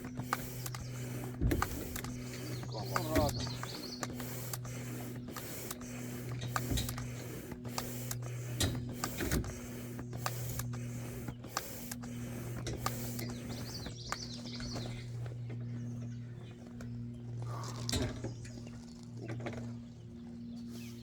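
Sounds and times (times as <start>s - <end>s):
air pump strokes: 0.0s - 20.0s
low hum: 0.0s - 21.0s.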